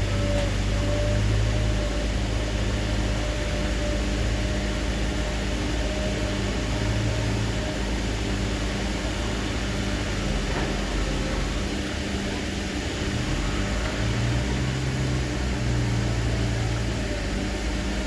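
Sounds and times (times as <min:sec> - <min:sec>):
heavy diesel engine running: 0:00.0 - 0:18.0.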